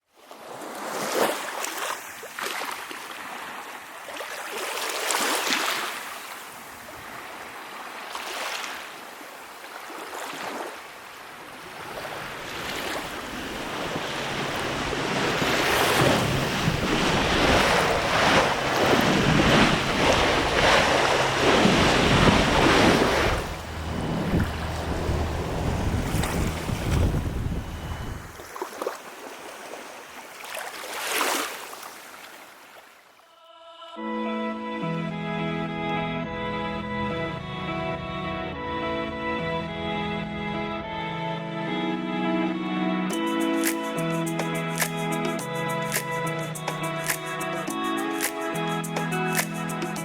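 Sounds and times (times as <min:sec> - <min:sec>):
ocean waves washing: 0:00.6 - 0:32.8
wind blowing: 0:13.2 - 0:28.8
wind buffeting microphone: 0:13.4 - 0:28.5.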